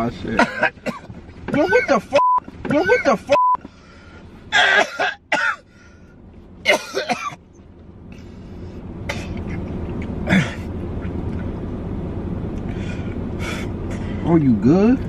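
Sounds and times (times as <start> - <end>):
man coughing and hacking: 0.3 - 3.4, 4.5 - 5.7, 6.6 - 7.4, 9.1 - 9.6, 10.2 - 10.7.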